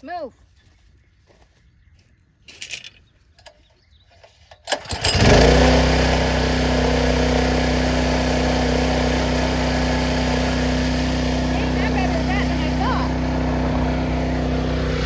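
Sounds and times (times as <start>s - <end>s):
recoil starter cord pull: 4.5s - 7.3s
small gasoline engine running: 4.7s - 15.0s.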